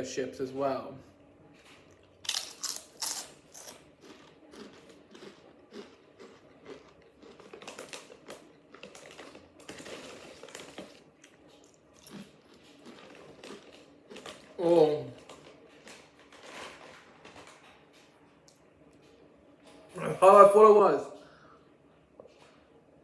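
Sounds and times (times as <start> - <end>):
potato chips crunching: 2.0 - 17.6.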